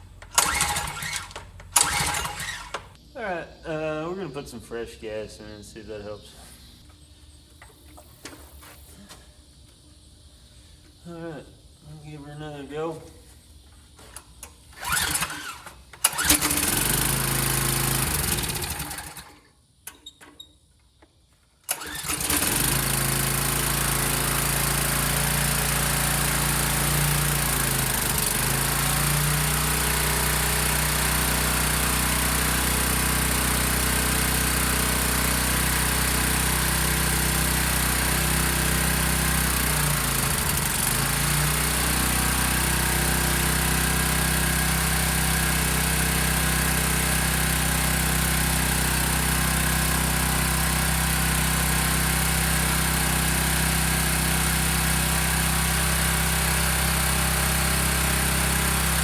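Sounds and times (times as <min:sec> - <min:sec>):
small engine pull-started: 0:00.0 - 0:03.0, 0:14.2 - 0:20.5, 0:21.6 - 0:59.0.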